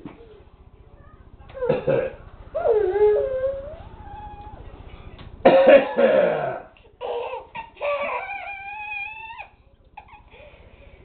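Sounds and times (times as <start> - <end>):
man fake coughing: 5.5 - 6.7
child squealing and laughing: 7.1 - 10.4.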